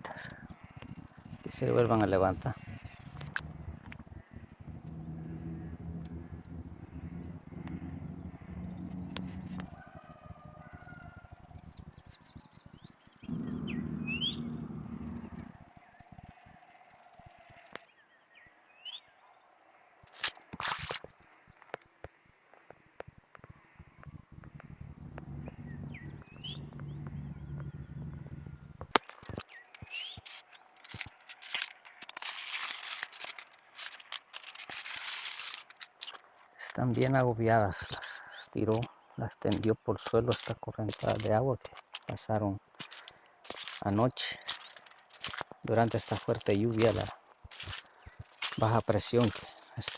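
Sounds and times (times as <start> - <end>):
steady low hum: 0.0 - 16.8, 23.6 - 29.0
birds chirping: 0.0 - 19.4, 23.4 - 32.0, 36.2 - 49.9
crop leaves rustling underfoot: 42.8 - 49.9.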